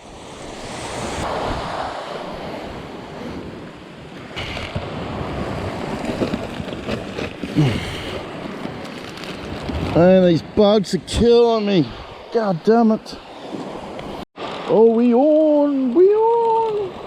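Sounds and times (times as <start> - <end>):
wind buffeting microphone: 0.0 - 7.2
surf washing onto beach: 0.0 - 17.0.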